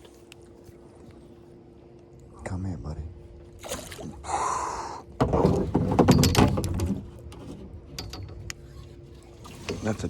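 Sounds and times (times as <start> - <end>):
water splashing: 3.6 - 4.4
hollow knocks and clatter: 5.2 - 8.6.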